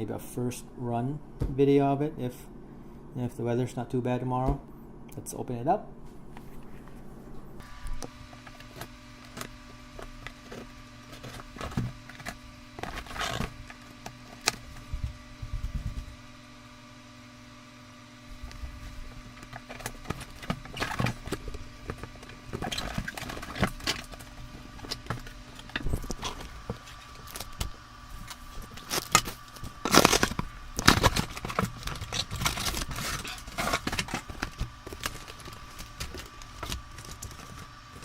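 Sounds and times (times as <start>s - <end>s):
faint steady hum: 0.0s - 38.0s
box packaging being handled: 7.6s - 16.5s, 18.3s - 38.0s.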